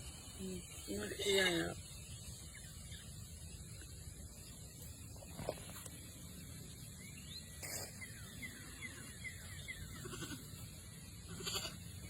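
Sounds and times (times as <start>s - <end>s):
goats bleating: 10.0s - 10.5s, 11.3s - 11.8s.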